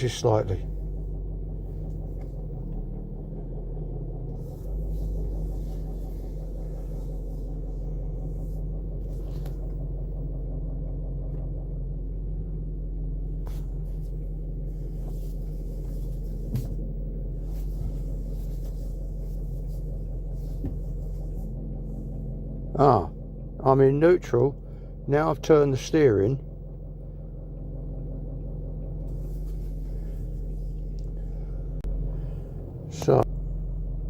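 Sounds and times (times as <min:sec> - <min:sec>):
diesel engine idling: 0:00.0 - 0:34.0
faint low clicking: 0:26.4 - 0:33.1.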